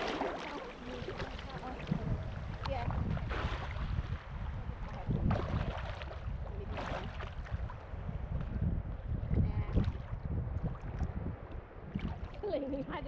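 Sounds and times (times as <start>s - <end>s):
water rushing: 0.0s - 7.8s
wind rumbling on microphone: 0.0s - 13.0s.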